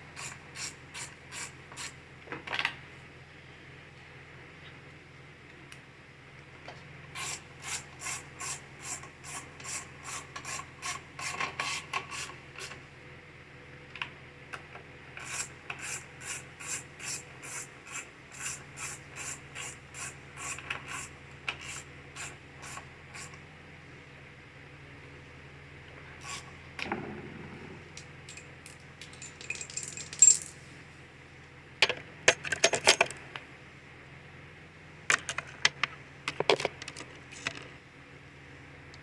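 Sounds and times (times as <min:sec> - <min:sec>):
hand tool rasping strokes: 0:00.0 - 0:02.0, 0:07.2 - 0:12.8, 0:15.2 - 0:23.4, 0:26.2 - 0:26.6.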